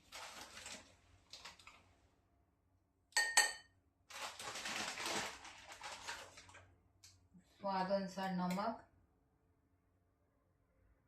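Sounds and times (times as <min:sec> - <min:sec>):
scraping and rustling of flour: 0:00.0 - 0:01.8, 0:04.1 - 0:06.6
metal spoon clinking on bowl: 0:03.2 - 0:03.7.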